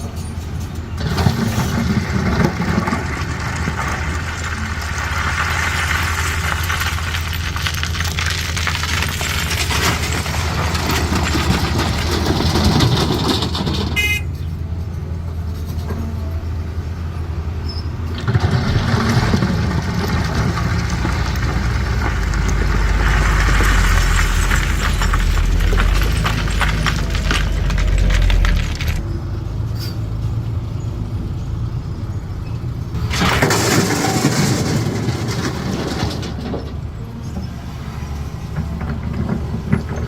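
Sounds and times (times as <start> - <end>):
excavator diesel engine running: 0.0 - 40.0
stone clattering and scraping: 1.0 - 13.9, 18.2 - 29.0
short horn toot: 14.0 - 14.3.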